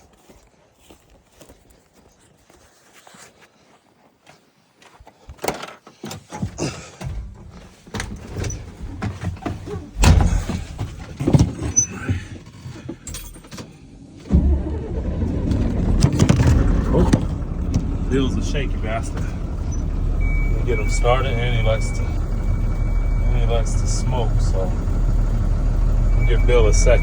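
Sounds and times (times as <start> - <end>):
truck door and controls clicking: 5.4 - 27.0
diesel engine starting and idling: 6.6 - 27.0.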